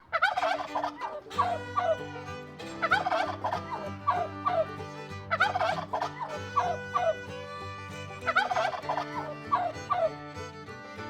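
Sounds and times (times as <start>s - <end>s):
turkey gobbling: 0.0s - 2.0s, 2.8s - 4.7s, 5.3s - 7.2s, 8.3s - 10.1s.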